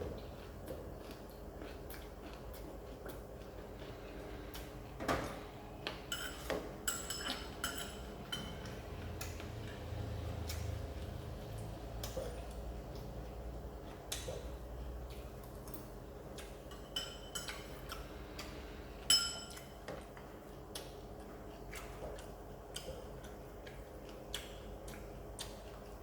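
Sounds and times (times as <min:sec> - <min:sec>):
crunchy chewing: 0:00.0 - 0:05.0, 0:19.5 - 0:26.0
utensil clinking against dish: 0:06.1 - 0:08.8, 0:16.7 - 0:17.7, 0:19.1 - 0:19.7.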